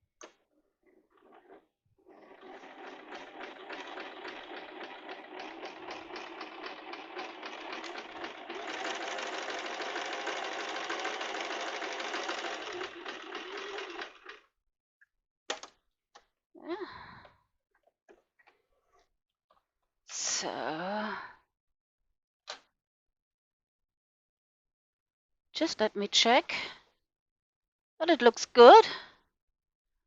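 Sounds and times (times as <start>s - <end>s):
sewing machine stitching: 0.8s - 14.5s.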